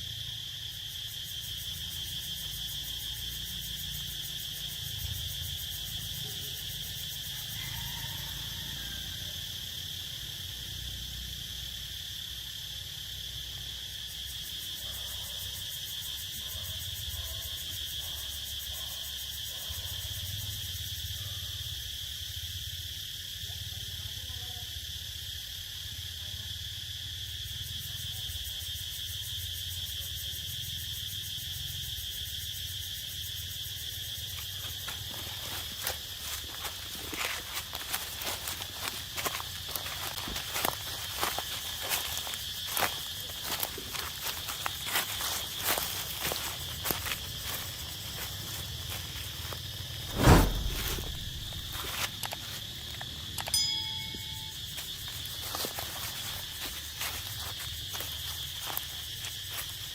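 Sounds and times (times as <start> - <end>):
high-pitched insect chorus: 0.0 - 59.9
low rumble: 50.0 - 51.9.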